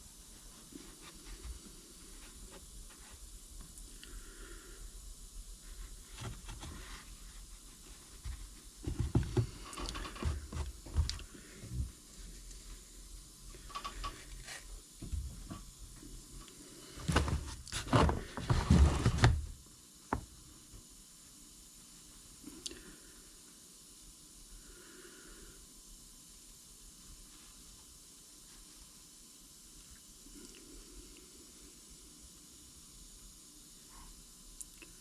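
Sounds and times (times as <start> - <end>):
rubbing and scraping plastic: 17.0 - 19.5.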